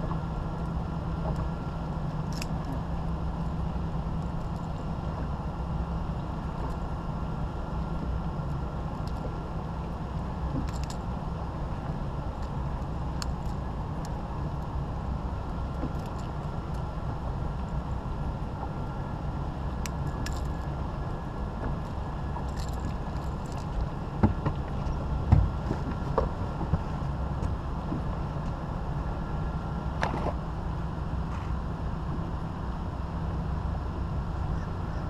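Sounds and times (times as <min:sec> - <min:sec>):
boat motor rumbling: 0:00.0 - 0:35.0
objects knocking in boat: 0:24.2 - 0:28.1.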